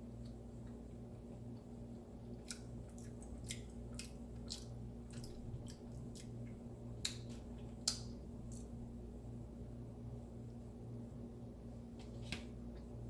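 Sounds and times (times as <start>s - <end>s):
chewing mouth clicks and smacks: 0.2s - 8.8s.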